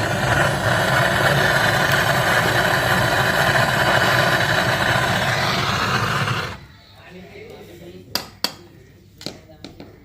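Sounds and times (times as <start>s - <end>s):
gas torch hissing: 0.0s - 7.2s.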